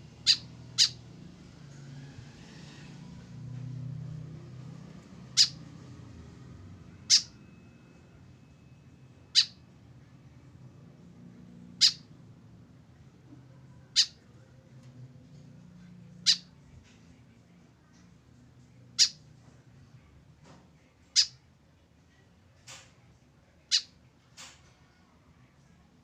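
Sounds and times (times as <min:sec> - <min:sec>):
faint low hum: 0:00.0 - 0:26.0
bird giving sharp high calls: 0:00.2 - 0:01.0, 0:05.3 - 0:05.6, 0:07.0 - 0:07.4, 0:09.3 - 0:09.6, 0:11.8 - 0:12.1, 0:13.9 - 0:14.2, 0:16.2 - 0:16.5, 0:19.0 - 0:19.2.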